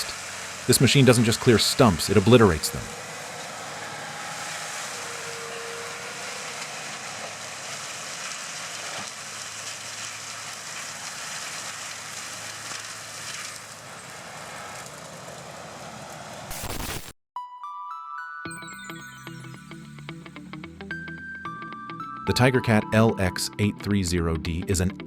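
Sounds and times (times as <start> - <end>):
low engine hum: 0.0 - 16.5
mulcher grinding tree stump: 0.0 - 17.1.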